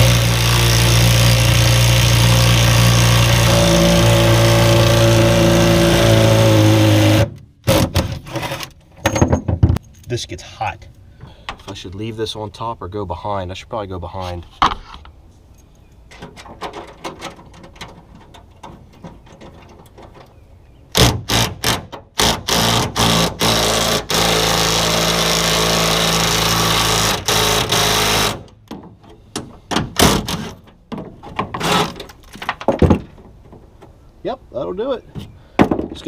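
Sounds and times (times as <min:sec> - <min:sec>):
knocks: 0:28.7 - 0:33.9.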